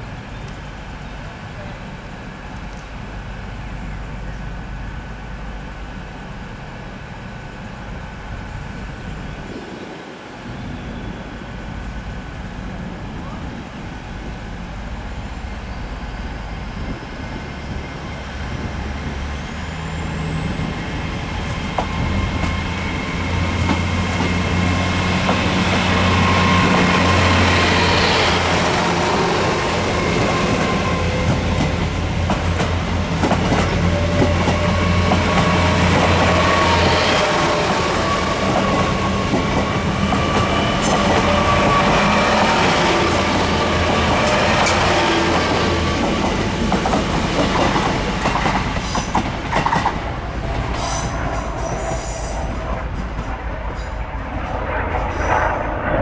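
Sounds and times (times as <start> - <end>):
train pulling away: 0.0 - 56.0.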